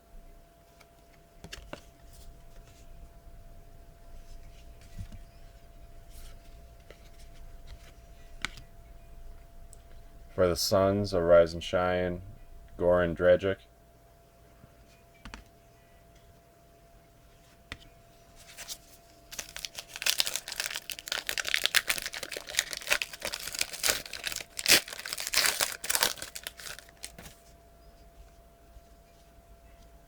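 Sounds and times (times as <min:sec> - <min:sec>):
wrapper tearing and crinkling: 0:19.3 - 0:27.3.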